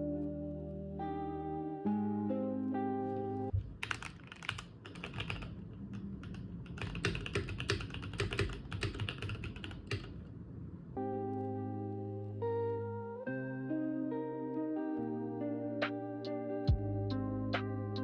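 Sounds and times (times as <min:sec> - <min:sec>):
mechanical keyboard typing: 0:03.8 - 0:10.1
lofi background music: 0:14.1 - 0:18.0.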